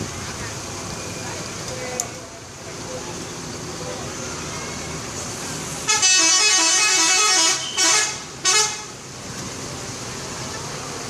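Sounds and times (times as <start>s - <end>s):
multi-tone bus horn tune: 5.8s - 9.0s.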